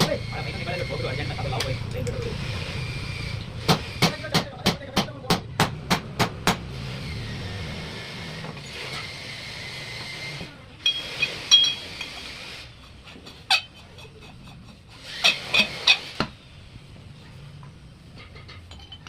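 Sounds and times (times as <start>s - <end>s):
steady background noise: 0.0s - 19.0s
hammer strikes: 3.6s - 6.7s
metallic clinks: 18.4s - 19.0s.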